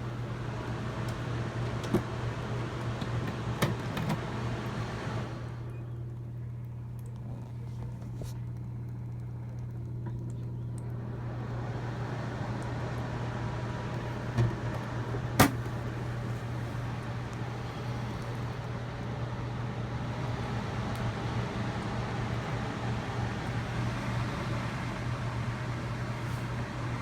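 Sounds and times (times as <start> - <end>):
air cooler humming and rushing: 0.0 - 27.0.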